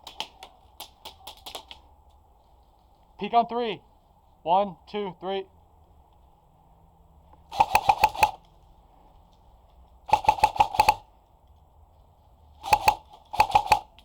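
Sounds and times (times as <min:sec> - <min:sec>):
airsoft gun firing: 0:07.5 - 0:08.4, 0:10.1 - 0:11.1, 0:12.6 - 0:14.0.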